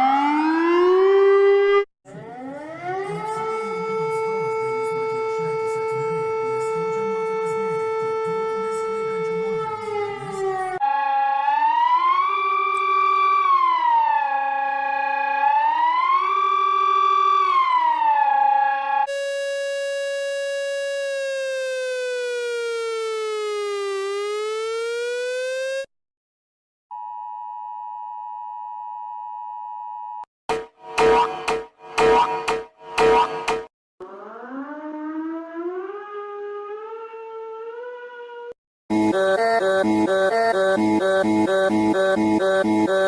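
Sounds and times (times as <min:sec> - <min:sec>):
warning siren steady tone: 0:00.0 - 0:25.9, 0:26.9 - 0:43.0
electronic alert siren tone: 0:16.0 - 0:25.9, 0:30.5 - 0:34.4, 0:38.9 - 0:43.0.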